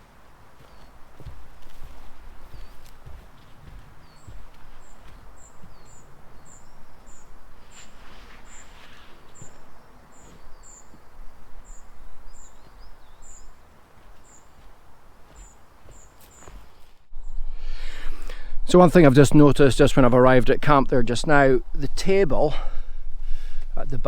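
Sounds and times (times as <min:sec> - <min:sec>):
rustling: 0:00.0 - 0:17.1
bird chirping: 0:00.0 - 0:17.5.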